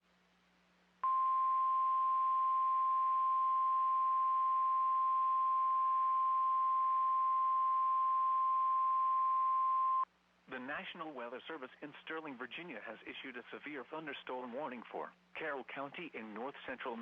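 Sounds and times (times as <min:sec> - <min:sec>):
faint radio hiss: 0:00.0 - 0:02.7, 0:09.8 - 0:17.0
high-pitched warning beep: 0:01.0 - 0:10.0.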